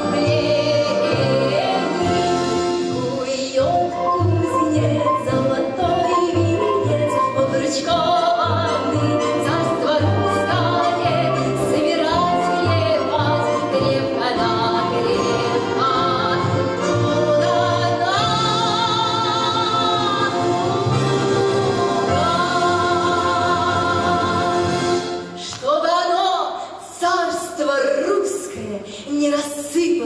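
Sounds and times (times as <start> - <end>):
orchestra playing: 0.0 - 25.5
woman singing with vibrato: 0.0 - 30.0.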